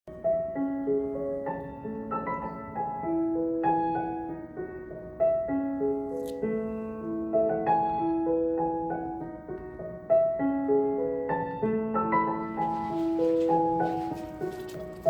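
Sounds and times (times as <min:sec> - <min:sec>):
slow piano music: 0:00.1 - 0:15.0.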